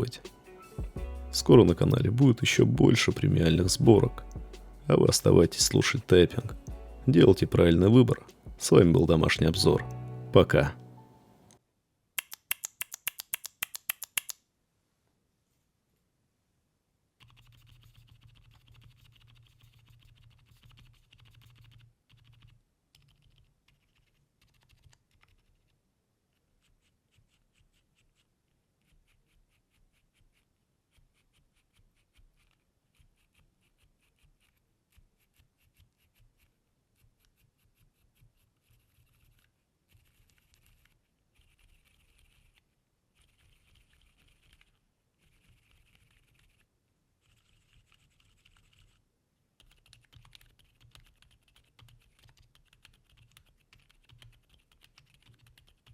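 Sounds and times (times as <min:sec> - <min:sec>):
muted keyboard typing: 0:12.2 - 0:14.4, 0:49.6 - 0:55.9.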